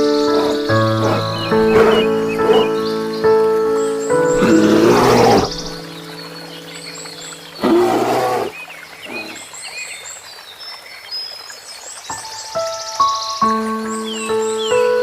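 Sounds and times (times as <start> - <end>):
soft background music: 0.0 - 8.9, 12.1 - 15.0
birds chirping: 0.0 - 15.0
large animal roaring: 0.3 - 2.9, 4.3 - 5.8, 7.6 - 9.4.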